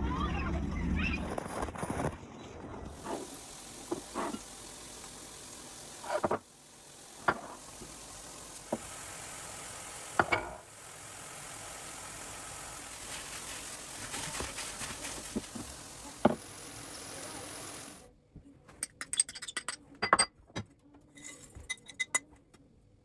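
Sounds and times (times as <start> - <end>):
cookware knocks and clinks: 10.2 - 10.6, 18.7 - 22.3.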